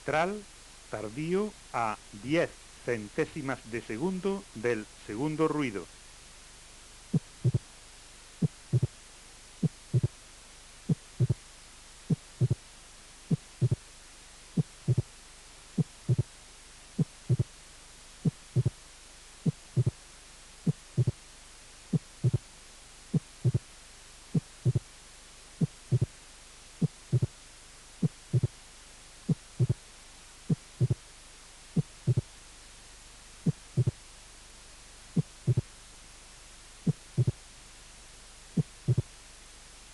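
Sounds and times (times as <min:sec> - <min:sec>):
faint steady hiss: 0:00.0 - 0:39.9
heartbeat: 0:07.1 - 0:07.7, 0:08.4 - 0:09.0, 0:09.6 - 0:10.2, 0:10.8 - 0:12.7, 0:13.3 - 0:13.9, 0:14.5 - 0:16.4, 0:17.0 - 0:17.6, 0:18.2 - 0:18.8, 0:19.4 - 0:20.0, 0:20.6 - 0:21.2, 0:21.9 - 0:22.5, 0:23.1 - 0:23.7, 0:24.3 - 0:25.0, 0:25.6 - 0:26.2, 0:26.8 - 0:27.4, 0:28.0 - 0:28.6, 0:29.2 - 0:31.1, 0:31.8 - 0:32.4, 0:33.4 - 0:34.0, 0:35.1 - 0:35.7, 0:36.8 - 0:37.4, 0:38.6 - 0:39.2.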